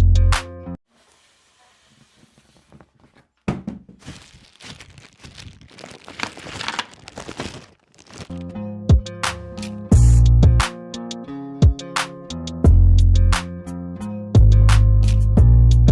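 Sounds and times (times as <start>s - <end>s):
packaging crinkling and rustling: 3.9s - 8.5s.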